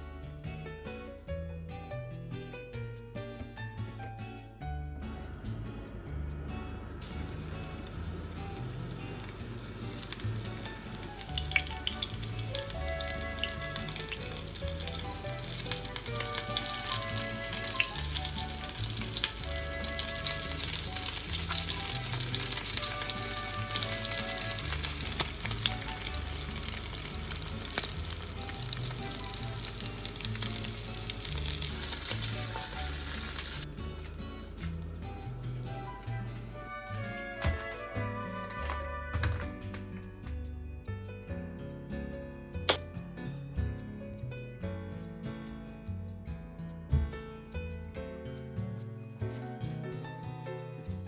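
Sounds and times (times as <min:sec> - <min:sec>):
light background music: 0:00.0 - 0:51.0
food sizzling in hot oil: 0:07.0 - 0:33.7.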